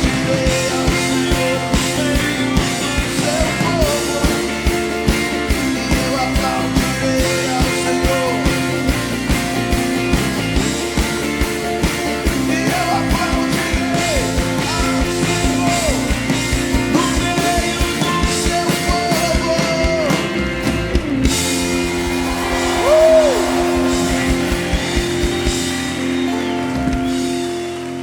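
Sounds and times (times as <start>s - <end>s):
drum beat: 0.0s - 27.5s
sustained chords: 20.4s - 28.0s.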